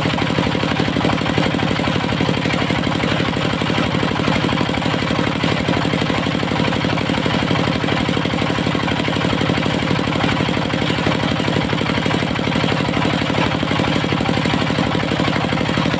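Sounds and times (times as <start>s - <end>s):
sawmill engine chugging: 0.0s - 15.9s.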